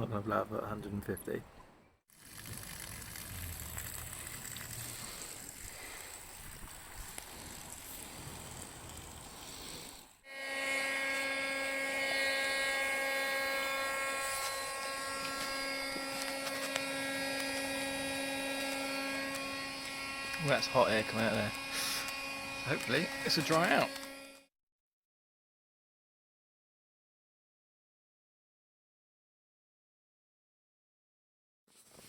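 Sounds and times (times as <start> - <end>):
hot-air blower motor whining: 6.8 - 24.4.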